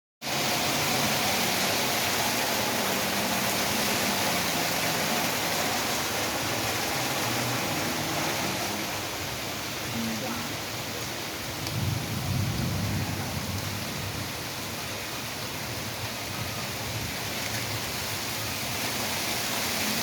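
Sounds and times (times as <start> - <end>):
rain pouring: 0.2 - 20.0.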